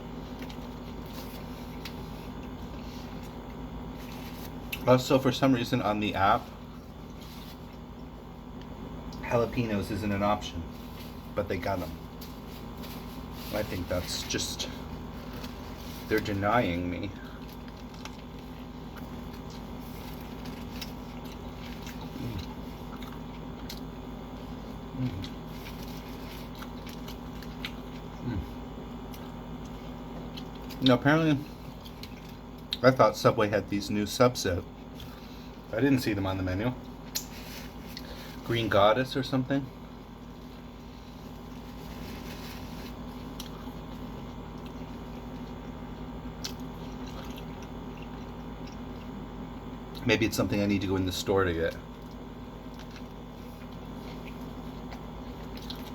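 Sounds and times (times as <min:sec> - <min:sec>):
low falling hums from eater: 0:00.0 - 0:55.9
chewing with wet mouth clicks: 0:17.2 - 0:31.0, 0:31.7 - 0:32.8, 0:43.3 - 0:50.0, 0:51.8 - 0:55.9.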